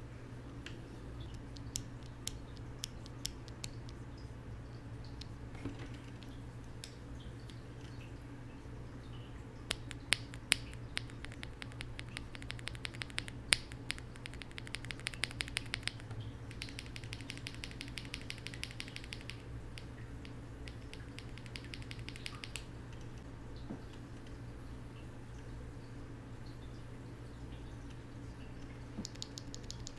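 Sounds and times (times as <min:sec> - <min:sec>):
keyboard switch clacking: 0:09.7 - 0:22.7.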